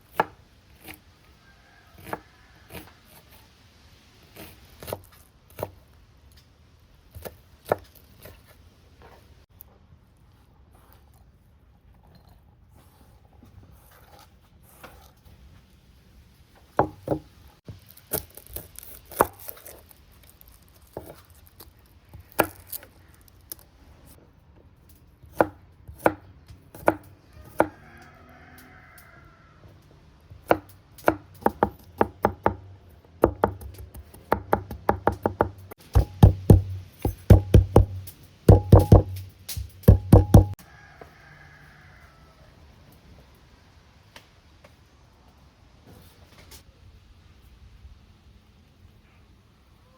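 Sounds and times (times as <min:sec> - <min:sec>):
knife chopping on cutting board: 0:26.8 - 0:27.7, 0:30.5 - 0:32.6, 0:33.2 - 0:40.6.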